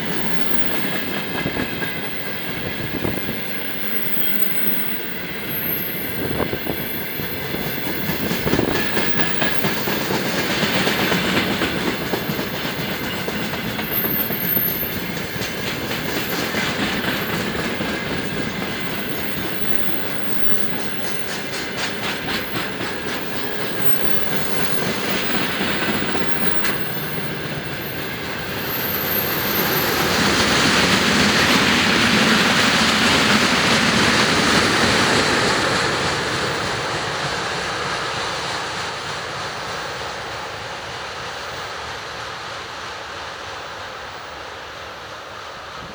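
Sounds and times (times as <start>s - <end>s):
freight train rolling past: 0.0s - 45.9s
wheels clicking over rail joints: 6.1s - 39.0s.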